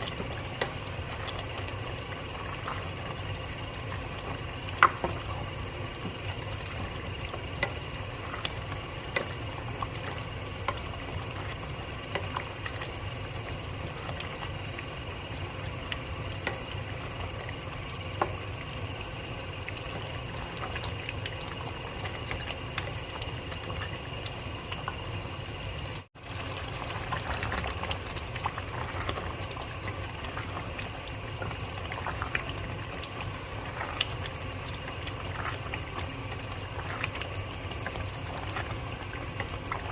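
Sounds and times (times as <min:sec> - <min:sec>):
curry bubbling in a pot: 0:00.0 - 0:39.9.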